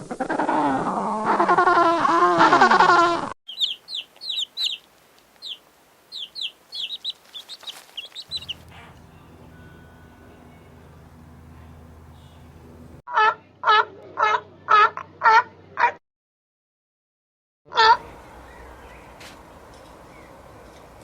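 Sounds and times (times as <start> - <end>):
small bird chirping: 3.5 - 9.4
faint low hum: 6.2 - 13.0
loud animal calls: 8.2 - 9.1.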